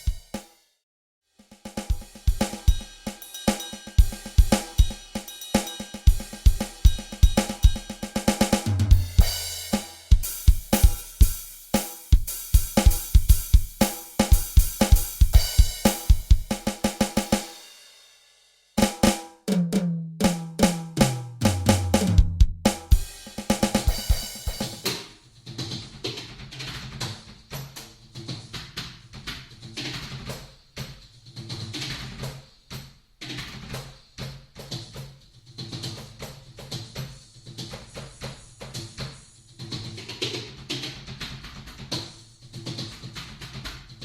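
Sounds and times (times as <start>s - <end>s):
drum kit playing a beat: 0.0s - 0.5s, 1.5s - 18.1s, 18.8s - 25.2s.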